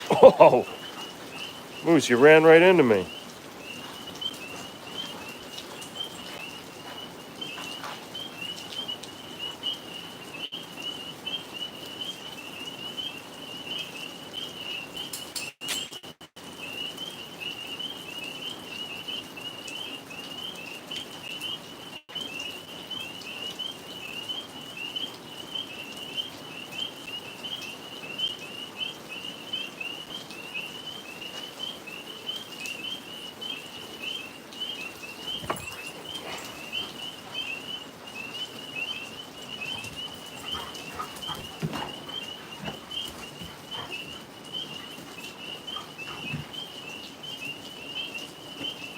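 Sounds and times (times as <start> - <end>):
tree frogs chirping: 0.0 - 15.2, 16.5 - 48.9.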